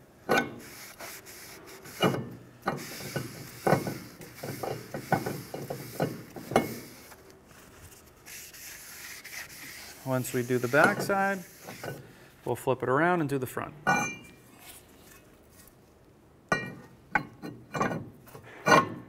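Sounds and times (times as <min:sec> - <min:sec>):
rag wiping metal: 0:00.4 - 0:12.2.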